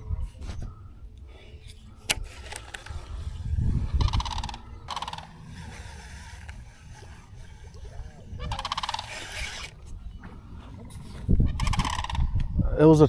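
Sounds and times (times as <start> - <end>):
bird pulsed calls: 3.8 - 12.6.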